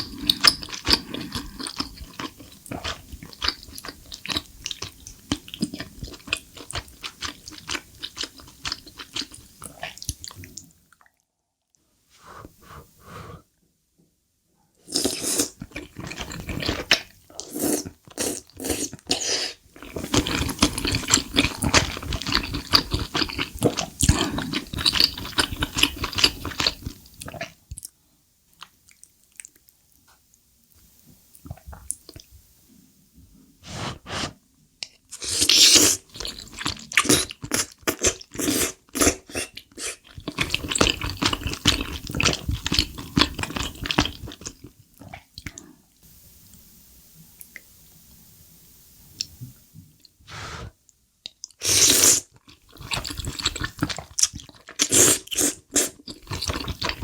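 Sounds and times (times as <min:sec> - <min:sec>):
wet chewing mouth sounds: 0:35.2 - 0:45.7, 0:51.2 - 0:57.0
hiss-like burst: 0:50.3 - 0:50.7.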